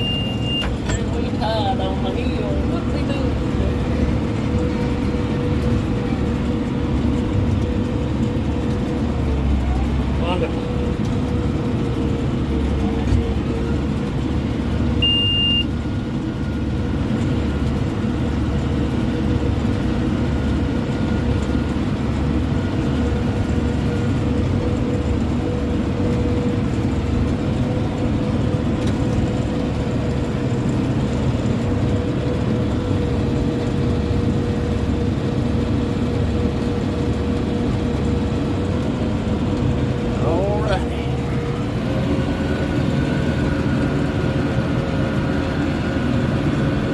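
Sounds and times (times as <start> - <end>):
high beep: 0.0 - 0.7, 15.0 - 15.7
tractor engine droning: 0.0 - 46.9.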